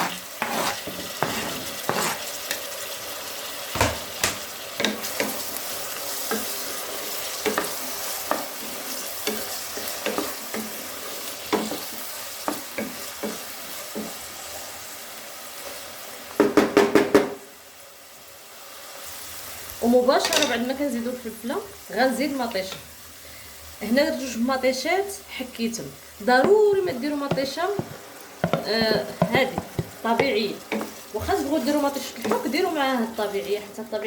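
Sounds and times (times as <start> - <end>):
utensil scraping a pan: 0.0 - 2.7, 26.3 - 32.6
vegetables sizzling in oil: 0.0 - 34.0.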